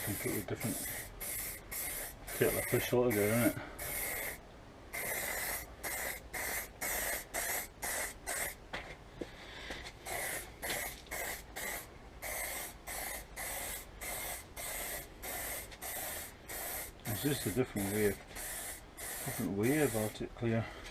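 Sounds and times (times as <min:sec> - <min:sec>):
aerosol spray can hissing: 0:00.0 - 0:04.4, 0:05.0 - 0:08.6, 0:10.0 - 0:20.2.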